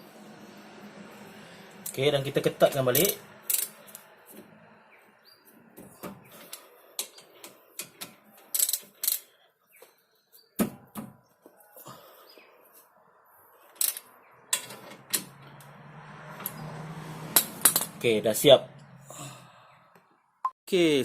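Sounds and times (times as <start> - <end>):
hand tools clicking on metal: 3.0 - 4.0, 6.4 - 9.3.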